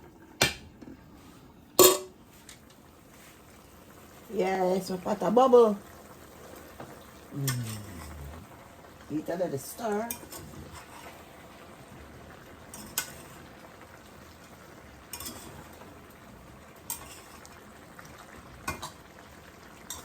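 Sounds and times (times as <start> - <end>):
simmering hiss: 1.0 - 14.6
spoon stirring a bubbling pot: 10.0 - 11.3, 12.6 - 13.7, 14.8 - 20.0.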